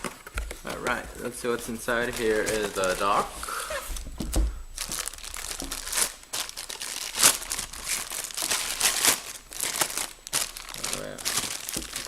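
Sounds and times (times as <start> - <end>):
plastic packaging crinkling: 0.0 - 12.0.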